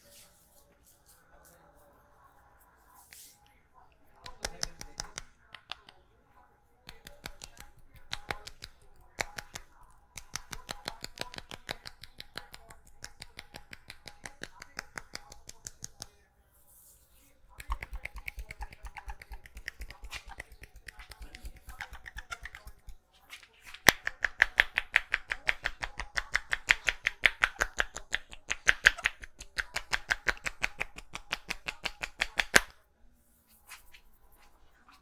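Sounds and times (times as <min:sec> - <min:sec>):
hands slapping in massage: 0:04.2 - 0:06.0, 0:06.9 - 0:16.2, 0:17.6 - 0:32.8.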